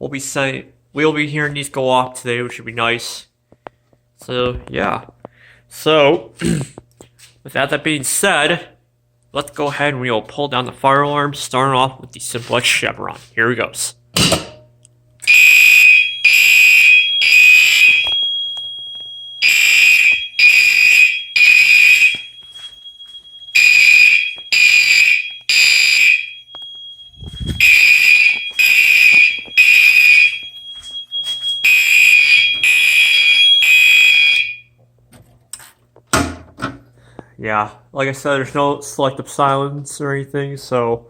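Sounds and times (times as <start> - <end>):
fire alarm horn blasts: 15.2 - 34.8.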